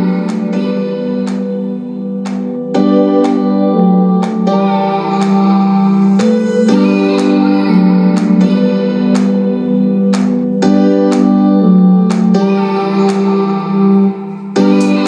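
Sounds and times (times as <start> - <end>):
keyboard chords: 0.0 - 15.0
percussion hits: 2.2 - 13.5.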